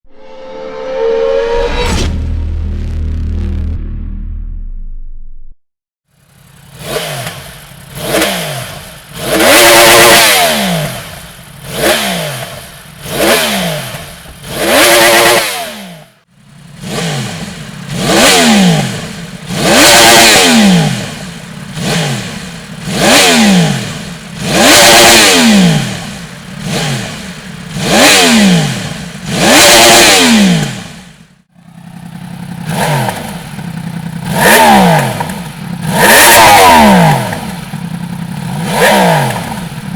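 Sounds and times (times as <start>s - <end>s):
motorcycle engine revving: 6.1s - 39.9s.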